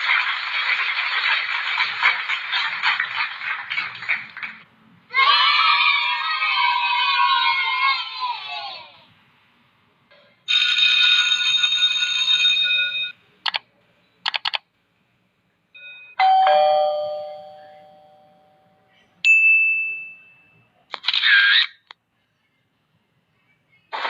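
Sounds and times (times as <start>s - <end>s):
chime-like chord: 15.8s - 18.7s
high ding: 15.8s - 20.6s
struck bell-like tone: 15.8s - 20.6s.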